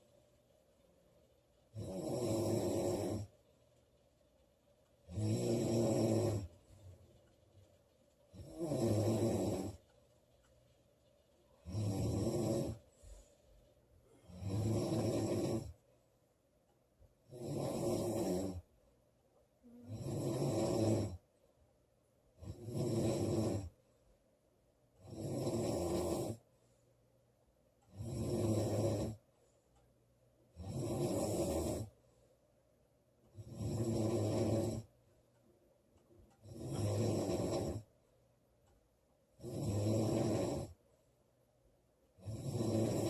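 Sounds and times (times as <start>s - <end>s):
quiet breathing: 0.0s - 16.2s, 19.6s - 21.6s, 22.3s - 38.3s
woman snoring loudly: 1.7s - 3.3s, 5.1s - 6.5s, 8.3s - 9.8s, 11.6s - 12.8s, 14.2s - 15.8s, 17.3s - 18.6s, 19.6s - 21.2s, 22.4s - 23.7s, 25.0s - 26.4s, 27.9s - 29.2s, 30.6s - 31.9s, 33.4s - 34.9s, 36.4s - 37.9s, 39.4s - 40.8s, 42.2s - 43.0s.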